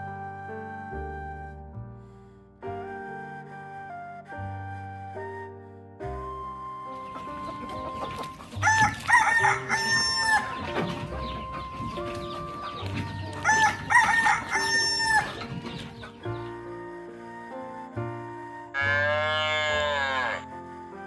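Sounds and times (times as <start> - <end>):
background music: 0.0 - 21.0
rooster crowing: 7.4 - 16.2.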